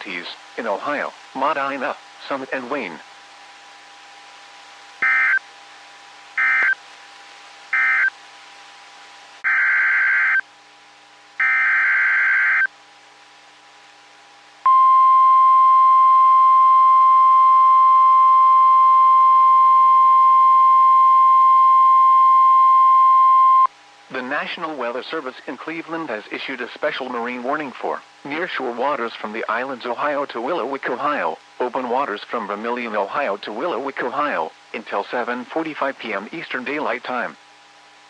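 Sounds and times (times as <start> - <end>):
steady warning alarm tone: 5.0 - 5.4, 6.4 - 6.8, 7.8 - 8.1, 9.4 - 10.4, 11.4 - 12.7.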